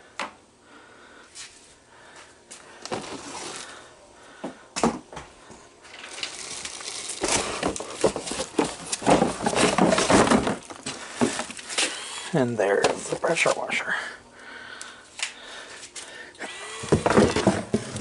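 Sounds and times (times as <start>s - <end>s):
packaging crinkling and crackling: 5.9s - 11.9s.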